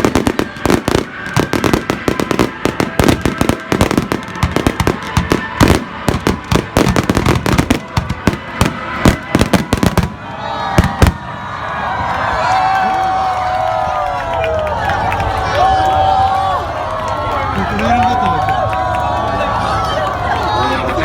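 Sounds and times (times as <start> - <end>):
fireworks bangs and crackles: 0.0 - 12.2.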